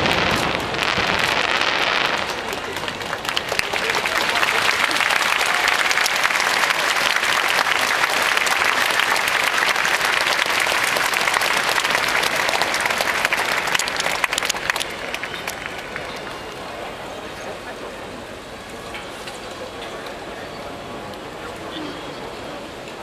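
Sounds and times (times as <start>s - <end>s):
crowd applauding: 0.0s - 17.9s
crowd voices: 0.0s - 23.0s.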